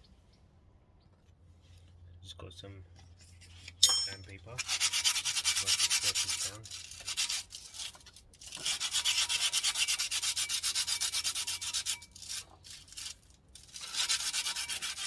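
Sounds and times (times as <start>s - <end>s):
hand sanding metal with abrasive paper: 4.5s - 15.0s.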